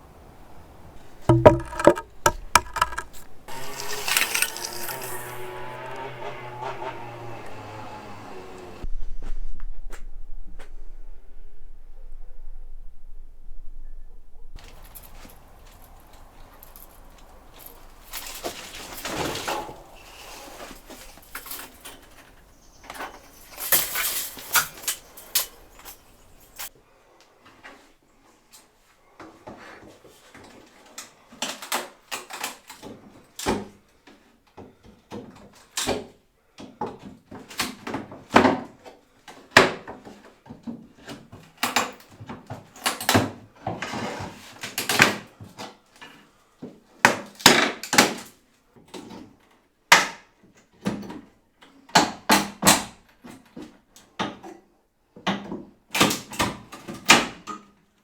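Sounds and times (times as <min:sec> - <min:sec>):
wooden knocks and clatter: 0:01.2 - 0:08.6.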